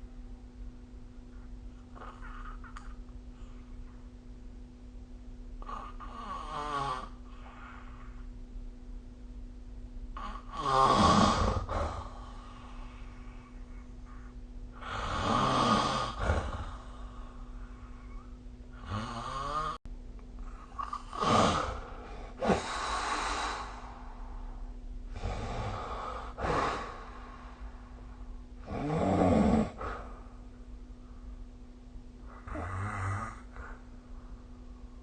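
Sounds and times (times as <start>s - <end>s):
steady low hum: 0.0s - 35.0s
person snoring: 5.6s - 8.3s, 10.2s - 19.8s, 20.4s - 27.8s, 28.6s - 30.4s, 32.2s - 33.9s.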